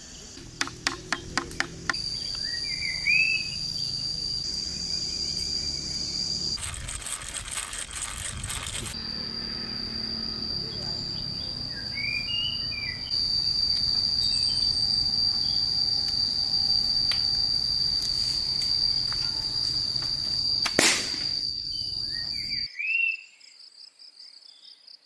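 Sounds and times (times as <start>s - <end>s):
high-pitched insect drone: 0.0s - 22.7s
pulsed insect chirping: 0.0s - 22.7s
sharp crack: 18.6s - 21.7s.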